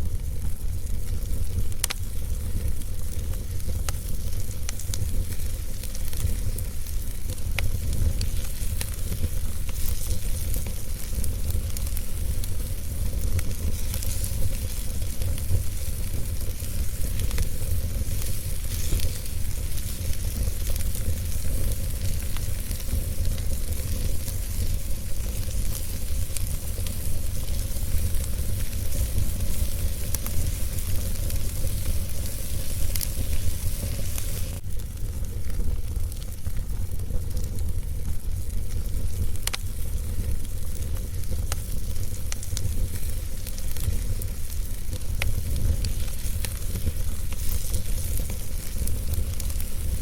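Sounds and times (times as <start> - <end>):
fire crackling and popping: 0.0 - 50.0
steady low rumble: 0.0 - 50.0
hiss: 2.3 - 34.6.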